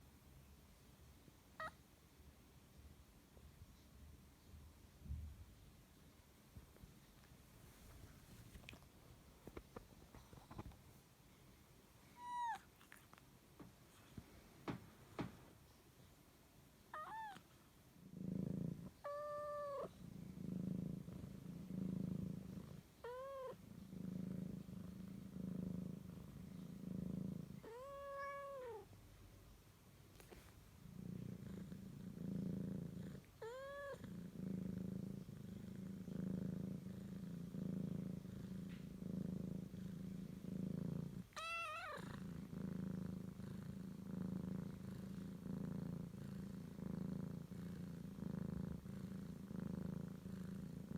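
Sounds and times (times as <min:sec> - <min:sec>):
cat purring: 0:02.7 - 0:16.2, 0:16.9 - 0:50.9
cat meowing: 0:12.2 - 0:12.7, 0:17.0 - 0:17.4, 0:41.4 - 0:42.0.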